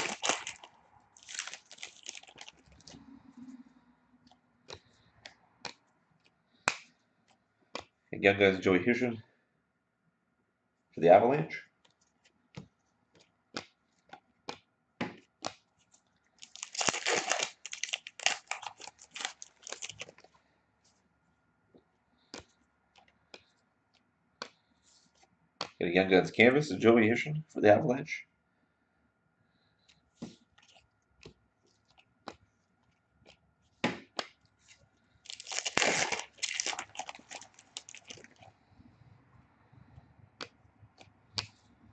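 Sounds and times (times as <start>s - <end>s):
wrapper tearing and crinkling: 0.0s - 3.0s, 16.4s - 20.3s, 35.2s - 38.5s.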